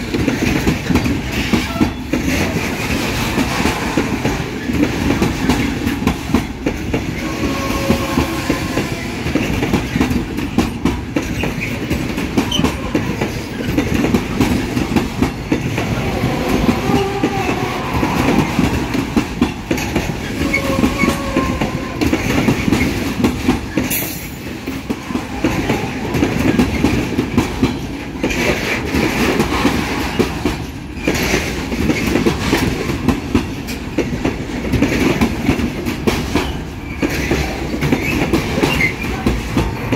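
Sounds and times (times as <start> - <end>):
train wheels clattering over rail joints: 0.0 - 39.9
wheel squeals: 11.2 - 13.8.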